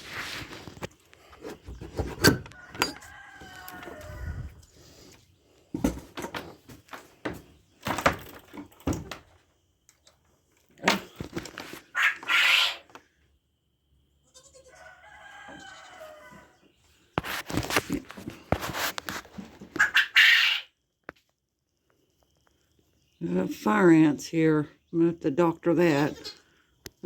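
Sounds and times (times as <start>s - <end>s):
rooster crowing: 2.4s - 4.7s, 14.6s - 16.6s.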